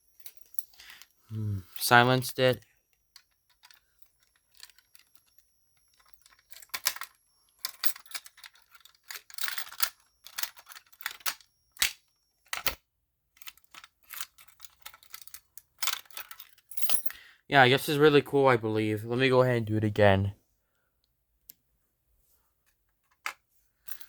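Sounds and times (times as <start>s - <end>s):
faint high steady whine: 0.0s - 12.8s.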